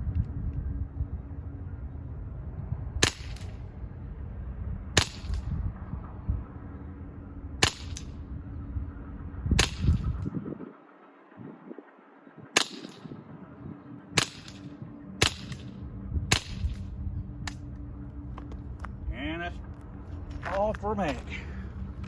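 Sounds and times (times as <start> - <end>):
steady low rumble: 0.0 - 22.0
air pistol shots: 3.0 - 3.5, 5.0 - 5.5, 7.6 - 8.1, 9.6 - 10.2, 12.6 - 13.2, 14.2 - 16.8.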